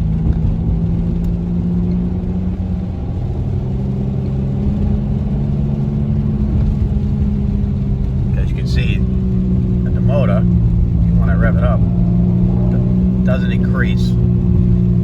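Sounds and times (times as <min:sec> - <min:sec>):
road and engine rumble: 0:00.0 - 0:15.0
low vibrating drone: 0:08.6 - 0:15.0.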